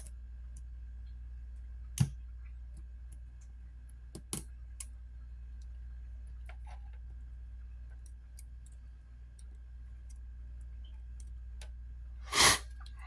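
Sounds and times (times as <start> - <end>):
small tools clicking on plastic: 3.1 - 5.0.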